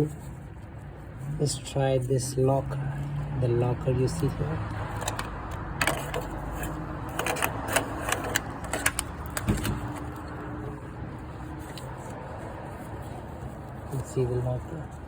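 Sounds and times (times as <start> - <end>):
sharp clicks and knocks: 4.9 - 10.4.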